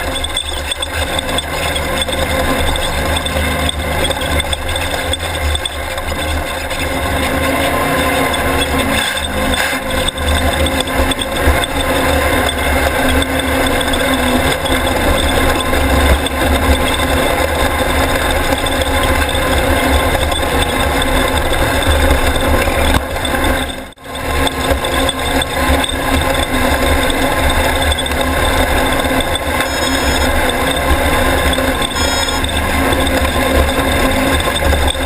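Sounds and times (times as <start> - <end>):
race car engine running: 0.0 - 35.0.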